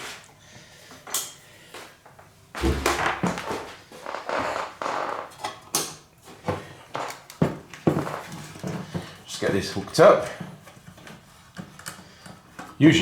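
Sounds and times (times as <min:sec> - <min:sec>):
scuffing and rattling: 0:06.3 - 0:10.4.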